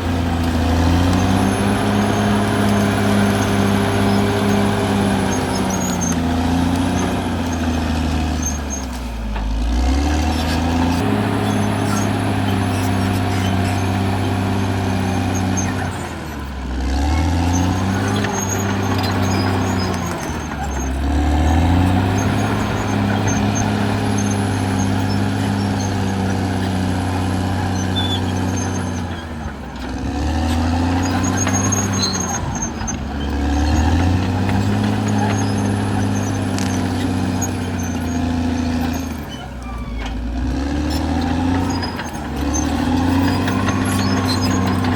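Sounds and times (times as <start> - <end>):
bulldozer diesel engine running: 0.0 - 44.9.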